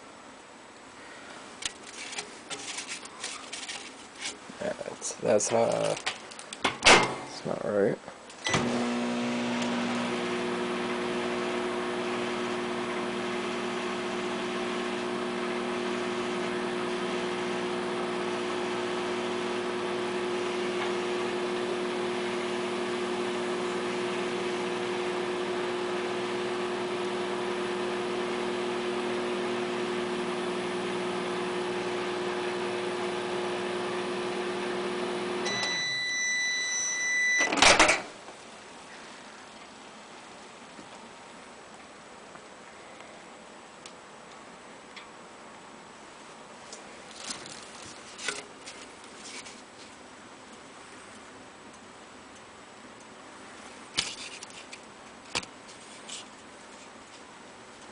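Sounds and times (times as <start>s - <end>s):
loud clunk: 6.7s - 7.3s, 37.4s - 38.1s
microwave beeping: 8.4s - 11.2s, 34.4s - 38.0s
microwave oven humming: 8.4s - 37.8s.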